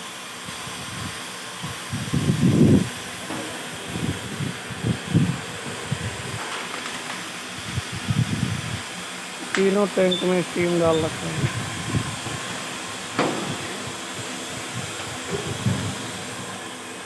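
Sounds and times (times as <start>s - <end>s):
steam hissing: 0.0s - 17.0s
low rumbling: 10.9s - 16.6s.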